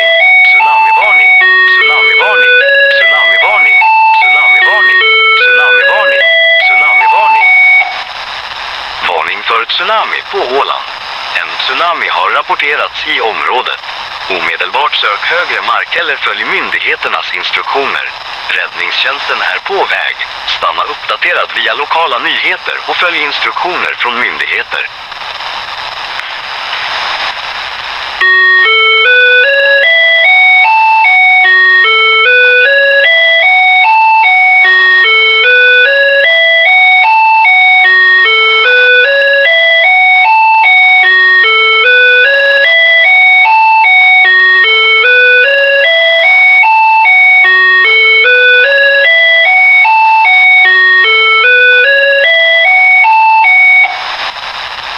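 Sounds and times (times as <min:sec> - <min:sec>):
electronic alert beeps climbing in pitch: 0:00.0 - 0:08.1.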